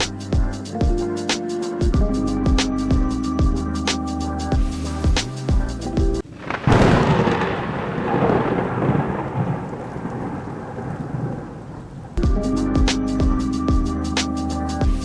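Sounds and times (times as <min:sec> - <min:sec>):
thunder crack and rumble: 0:04.6 - 0:12.3.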